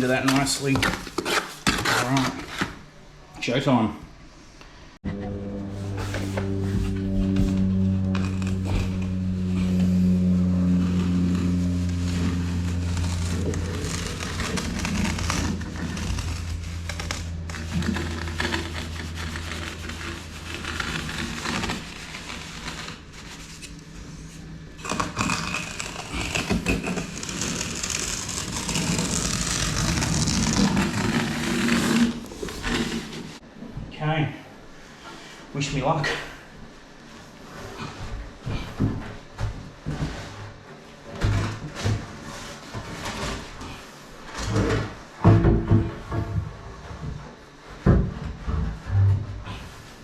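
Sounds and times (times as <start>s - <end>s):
scraping and crackling of handwork: 0.0s - 2.9s, 5.0s - 33.4s, 37.0s - 45.4s.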